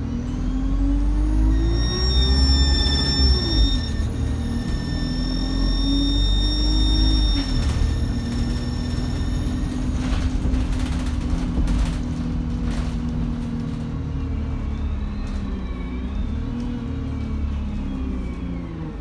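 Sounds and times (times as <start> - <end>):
turbocharger whistling: 0.0 - 11.0
bus diesel engine running: 0.0 - 19.0.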